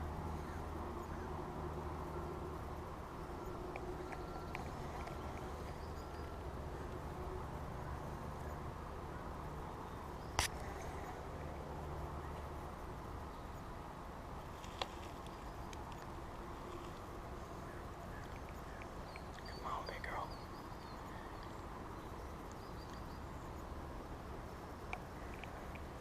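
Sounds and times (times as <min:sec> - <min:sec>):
low outdoor rumble: 0:00.0 - 0:26.0.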